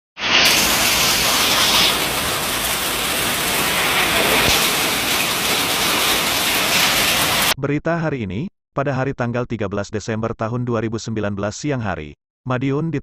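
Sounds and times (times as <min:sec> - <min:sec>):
heavy rain pouring: 0:00.2 - 0:07.6.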